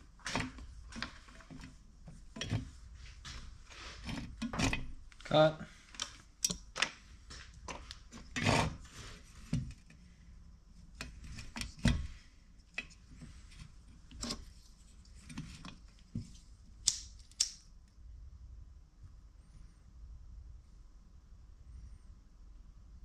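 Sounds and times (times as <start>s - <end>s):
tools clicking and tapping: 6.0s - 6.9s
sharp clicks: 16.8s - 17.6s.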